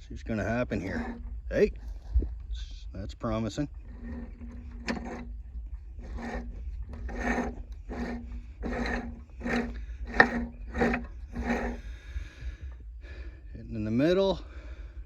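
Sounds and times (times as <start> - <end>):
mower knife scraping: 0.3 - 2.1, 3.2 - 12.4.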